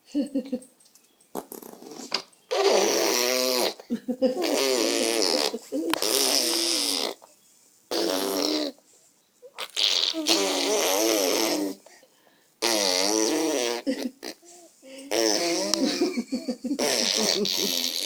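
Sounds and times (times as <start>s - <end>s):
baby blowing raspberries: 1.4s - 7.3s, 7.9s - 8.8s, 9.5s - 12.0s, 12.6s - 16.0s, 16.8s - 18.0s.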